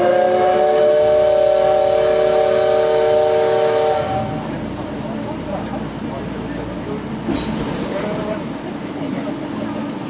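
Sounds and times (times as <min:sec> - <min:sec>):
steam locomotive whistle: 0:00.0 - 0:04.4
train running rumble: 0:01.0 - 0:10.0.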